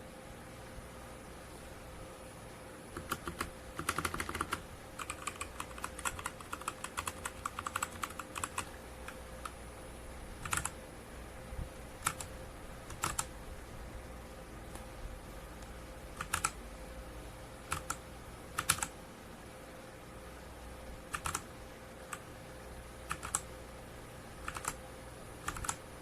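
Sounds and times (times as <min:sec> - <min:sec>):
mechanical keyboard typing: 0:02.9 - 0:09.6, 0:10.4 - 0:10.8, 0:12.0 - 0:13.3, 0:16.2 - 0:16.6, 0:17.7 - 0:19.0, 0:21.1 - 0:21.5, 0:22.1 - 0:22.3, 0:23.1 - 0:23.5, 0:24.4 - 0:24.8, 0:25.4 - 0:25.8.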